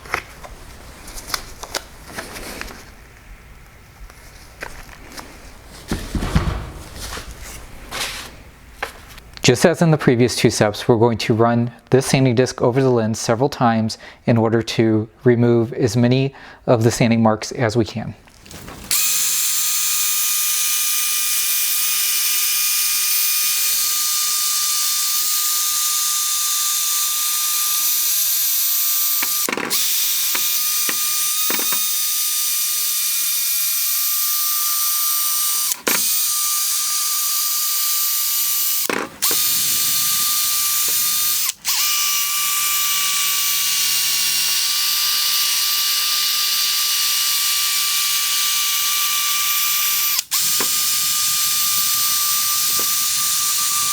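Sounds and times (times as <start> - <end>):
electric drill whine: 18.8 - 53.9.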